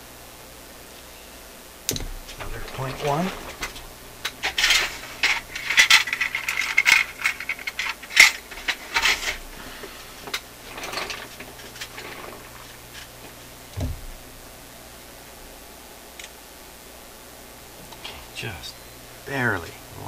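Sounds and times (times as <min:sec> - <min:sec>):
metal tools clinking and rattling: 0:02.3 - 0:09.4, 0:10.7 - 0:12.8
soft thump: 0:13.8 - 0:14.2.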